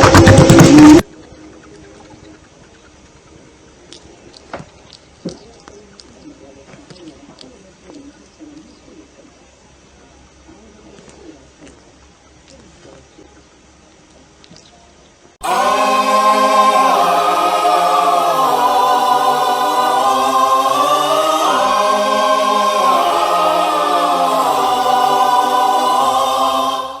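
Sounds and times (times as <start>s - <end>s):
choir singing held aah: 15.4s - 27.0s.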